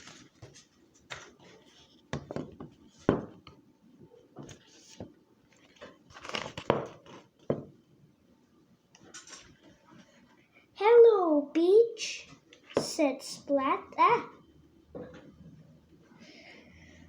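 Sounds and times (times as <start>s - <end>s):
book pages turning: 0.0s - 2.0s, 4.4s - 7.3s.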